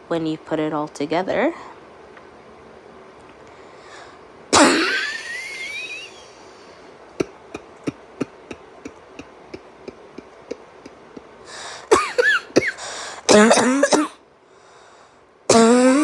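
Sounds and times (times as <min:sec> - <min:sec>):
person coughing muffled: 0:04.6 - 0:06.4, 0:11.6 - 0:14.2, 0:15.5 - 0:16.0.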